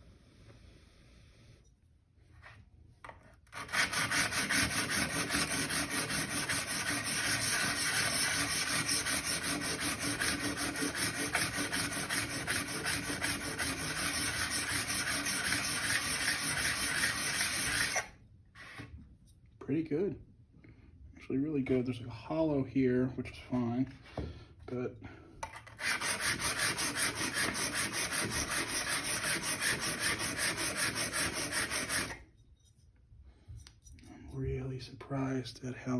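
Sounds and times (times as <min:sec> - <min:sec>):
plane iron scraping on abrasive: 0:03.6 - 0:18.8, 0:25.6 - 0:32.3.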